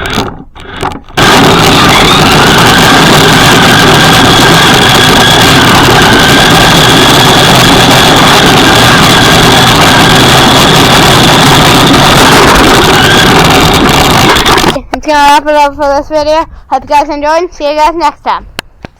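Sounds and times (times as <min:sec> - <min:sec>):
toy truck motor whine: 0:00.0 - 0:14.8.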